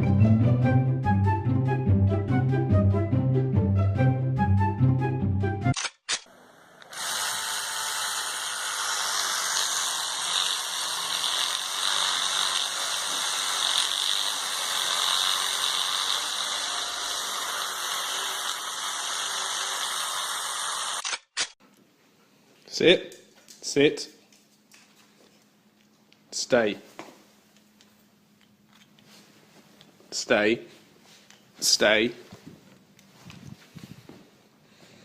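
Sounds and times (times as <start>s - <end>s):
steady mechanical noise: 6.1s - 21.5s.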